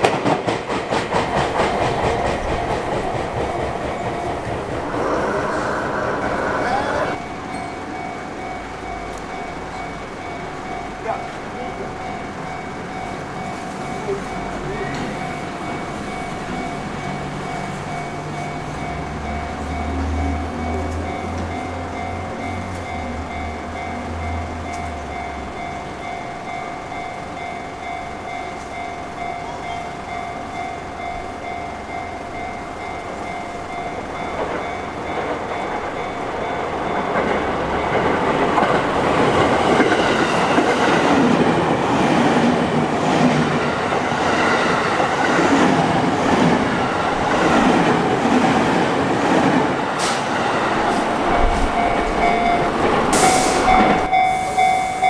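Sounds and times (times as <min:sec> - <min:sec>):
train wheels clattering over rail joints: 0:00.0 - 0:07.8, 0:33.1 - 0:54.1
level crossing bell ringing: 0:04.0 - 0:39.5, 0:51.4 - 0:55.0.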